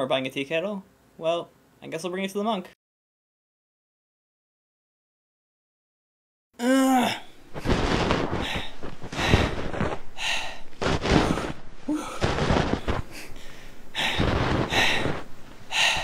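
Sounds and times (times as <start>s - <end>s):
man breathing hard and grunting: 8.3s - 16.0s.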